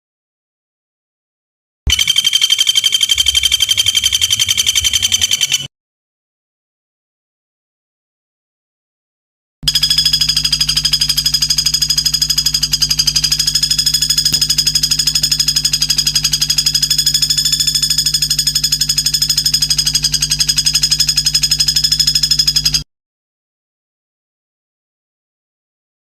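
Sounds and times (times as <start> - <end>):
rapid pulsing buzzing trill: 1.9 - 5.7, 9.7 - 22.8.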